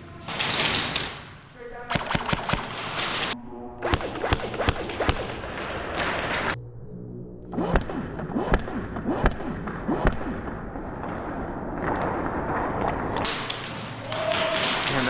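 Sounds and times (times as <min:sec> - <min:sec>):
airsoft gun shots: 0:00.3 - 0:06.2.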